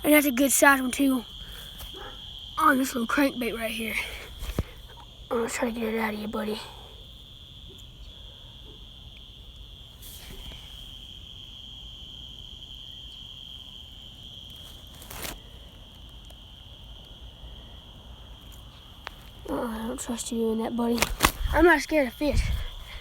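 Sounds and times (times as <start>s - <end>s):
crickets chirping: 0.0s - 23.0s
soft rustle: 1.3s - 2.3s, 4.1s - 5.0s, 9.9s - 11.0s, 14.5s - 15.6s, 20.9s - 23.0s.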